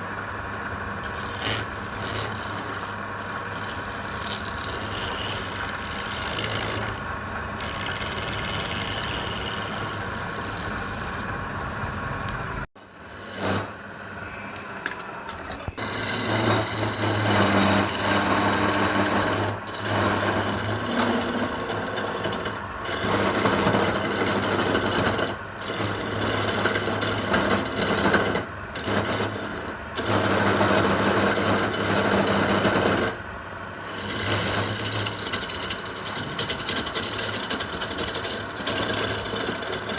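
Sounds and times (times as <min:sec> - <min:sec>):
electric woodworking machine humming: 0:00.8 - 0:11.8, 0:13.0 - 0:13.7, 0:15.8 - 0:33.2, 0:33.8 - 0:39.9
wood being cut: 0:01.0 - 0:11.4, 0:13.1 - 0:13.8, 0:15.8 - 0:33.2, 0:33.8 - 0:39.9.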